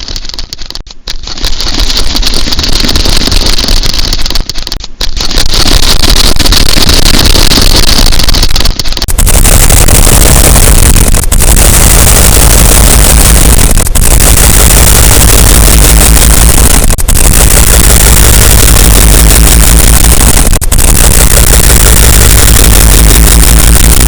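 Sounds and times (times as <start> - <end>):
distorted thunderstorm noise: 0.0 - 24.0.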